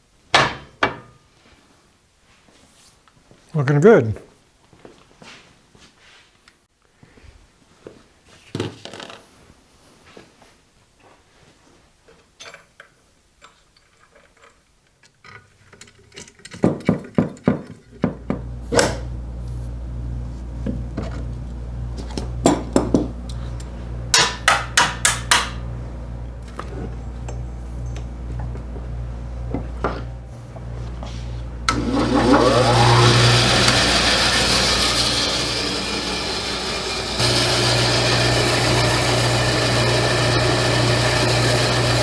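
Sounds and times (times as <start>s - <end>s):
bandsaw motor humming: 18.2s - 42.0s
taps and knocks: 24.2s - 25.6s.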